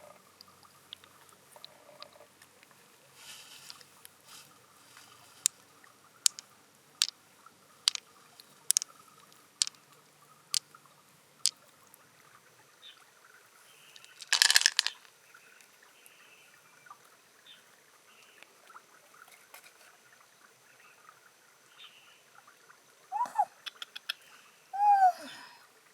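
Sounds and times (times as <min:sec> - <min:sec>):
sharp clicks: 0:07.9 - 0:08.9.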